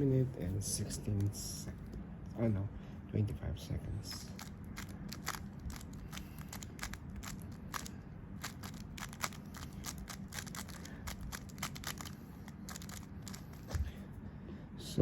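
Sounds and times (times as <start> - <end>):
puzzle cube plastic clicks: 4.2 - 13.7.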